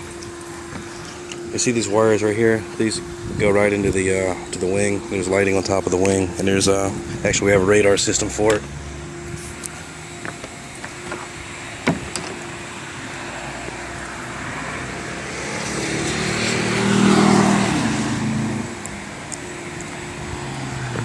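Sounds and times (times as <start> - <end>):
motor vehicle passing by: 12.4 - 21.0.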